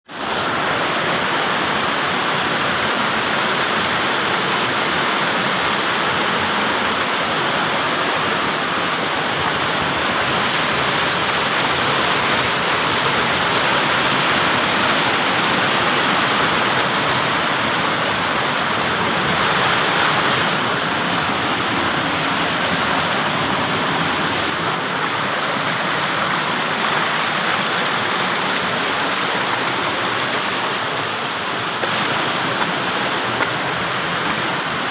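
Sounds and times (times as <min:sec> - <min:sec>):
waterfall roaring: 0:00.1 - 0:34.9.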